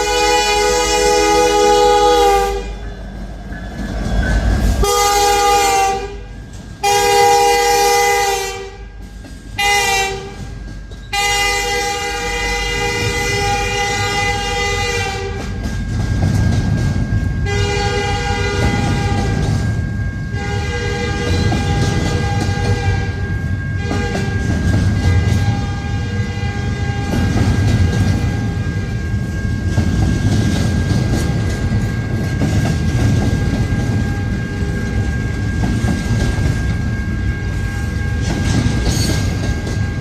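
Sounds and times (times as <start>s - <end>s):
locomotive air horn blasts: 0.0s - 2.8s, 4.8s - 8.9s, 9.6s - 10.5s, 11.1s - 15.6s, 17.4s - 19.5s, 20.3s - 24.4s, 25.0s - 29.1s
low rumble of passing train: 0.0s - 40.0s.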